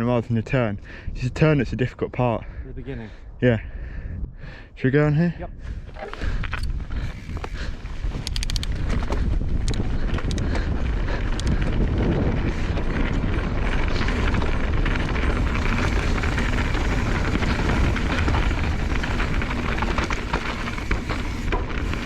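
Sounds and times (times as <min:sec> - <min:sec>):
wind on microphone: 0:00.0 - 0:04.8, 0:05.4 - 0:22.0
bike tyres rolling on dirt: 0:05.6 - 0:22.0
bike clicks and rattles: 0:05.9 - 0:22.0.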